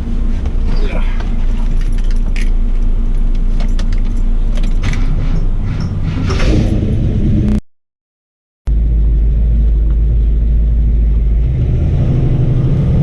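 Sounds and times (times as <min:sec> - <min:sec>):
engine running steadily: 0:00.0 - 0:07.6, 0:08.7 - 0:13.0
metallic jingling and clicks: 0:01.5 - 0:05.5.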